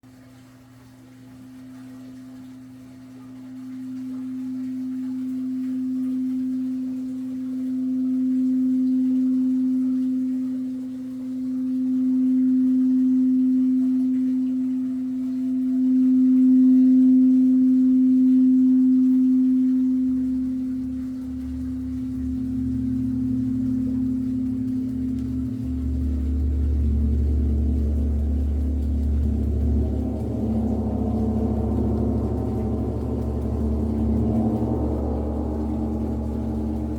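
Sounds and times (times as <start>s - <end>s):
sound-healing instrument humming tone: 0.0s - 36.9s
low rumble: 20.7s - 36.9s.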